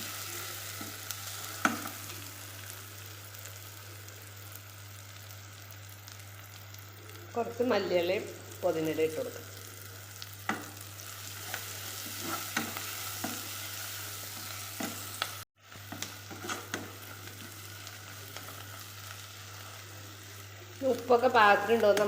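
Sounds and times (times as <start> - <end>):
food sizzling in a pan: 0.0 - 22.0
spoon scraping a pan: 11.4 - 13.8, 15.9 - 17.6.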